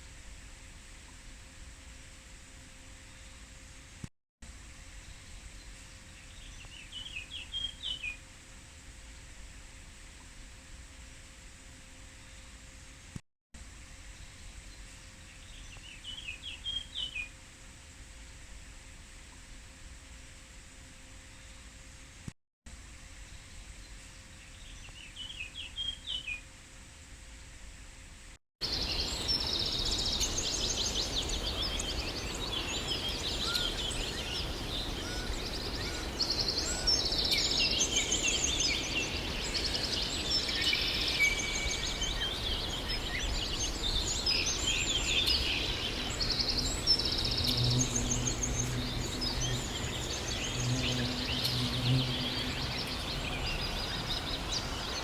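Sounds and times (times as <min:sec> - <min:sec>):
outdoor background hiss: 0:00.0 - 0:55.0
small birds chirping and trilling: 0:28.6 - 0:55.0.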